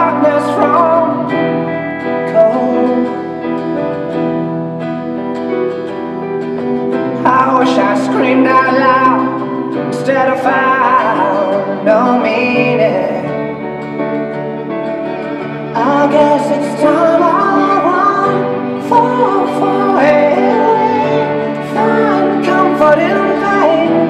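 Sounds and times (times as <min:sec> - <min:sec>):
woman singing slow ballad: 0:07.2 - 0:13.4, 0:15.7 - 0:24.0.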